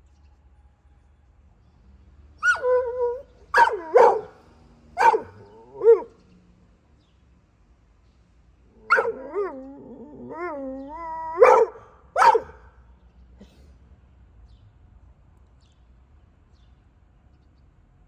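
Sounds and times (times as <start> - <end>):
dog whining: 2.4 - 4.3, 5.0 - 6.1, 8.9 - 12.5
dog barking: 2.4 - 4.4, 5.0 - 6.1, 8.9 - 9.5, 11.3 - 12.7
dog yelping: 2.4 - 4.4, 5.0 - 6.1, 8.9 - 12.6.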